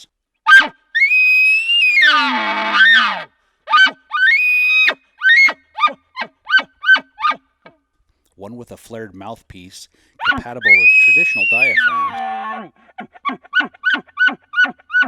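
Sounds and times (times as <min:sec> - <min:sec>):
elk bugle call: 0:00.0 - 0:03.2, 0:10.2 - 0:12.5
elk call chuckles: 0:10.2 - 0:12.2.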